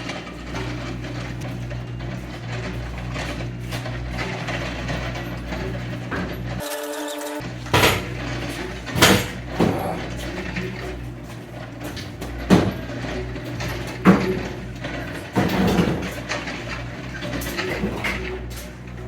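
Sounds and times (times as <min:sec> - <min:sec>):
sharp metal clunks and knocks: 0:07.6 - 0:10.0.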